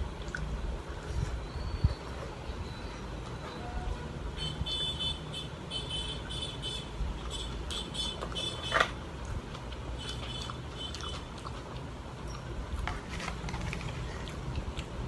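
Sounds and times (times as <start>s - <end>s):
low traffic-like rumble: 0.0s - 15.0s
mouth chewing with wet clicks: 0.2s - 1.1s, 9.2s - 15.0s.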